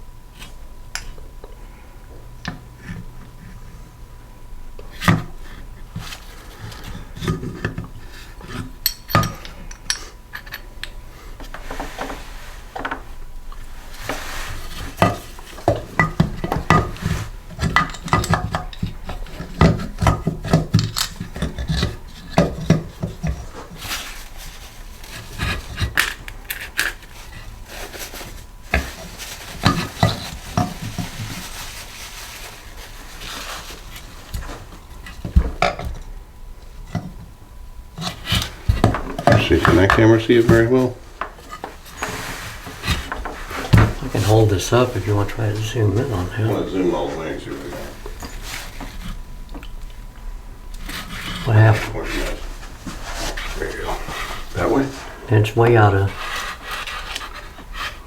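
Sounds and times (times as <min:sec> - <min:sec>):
metal parts and tools clattering: 0:08.8 - 0:11.0.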